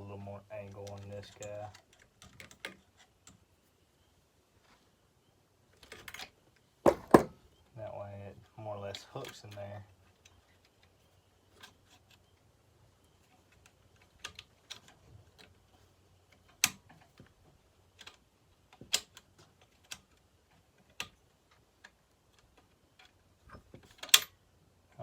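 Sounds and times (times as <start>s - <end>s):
small clicks of hand work: 0.7s - 3.5s, 9.0s - 12.4s, 13.0s - 25.0s
sharp knocks: 6.9s - 7.4s.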